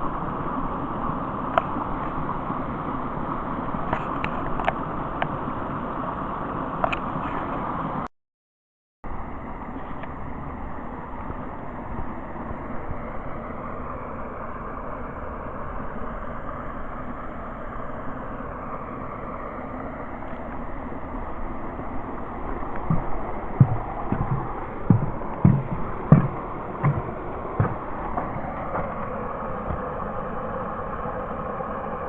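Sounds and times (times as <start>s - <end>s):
footsteps on trail: 22.8s - 29.1s.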